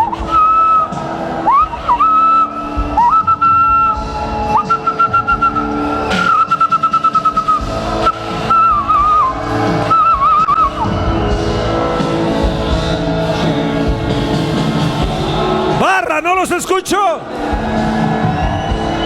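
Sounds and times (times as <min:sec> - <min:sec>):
ram's horns blowing: 0:00.0 - 0:12.0.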